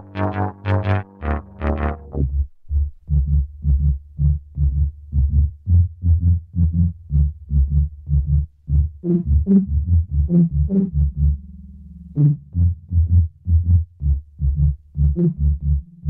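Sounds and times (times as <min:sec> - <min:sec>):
pulsing synth bass line: 0:00.0 - 0:16.0.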